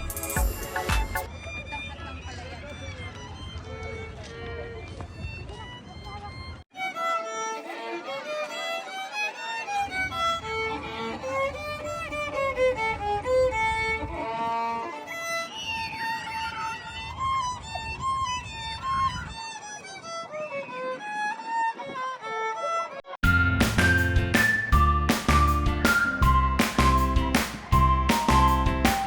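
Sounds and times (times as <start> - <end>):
violin melody: 0.4 - 23.6.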